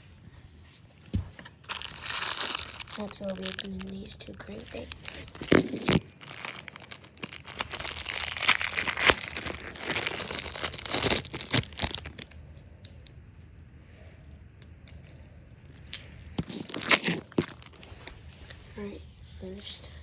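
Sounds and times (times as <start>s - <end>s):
packaging crinkling and tearing: 1.5s - 12.4s, 16.4s - 19.6s.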